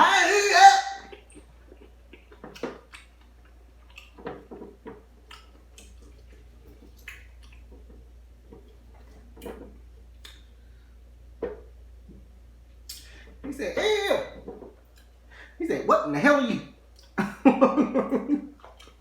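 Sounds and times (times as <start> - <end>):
person chewing food: 1.0 - 11.0, 14.5 - 15.3, 16.9 - 17.4, 18.1 - 19.0.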